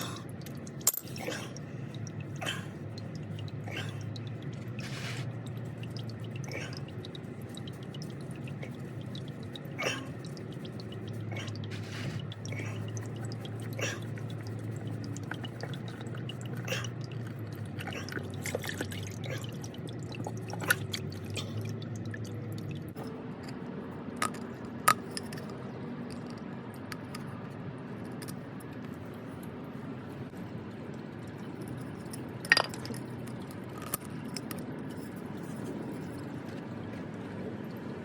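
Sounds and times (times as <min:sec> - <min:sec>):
metal tools clinking: 0:00.7 - 0:01.4.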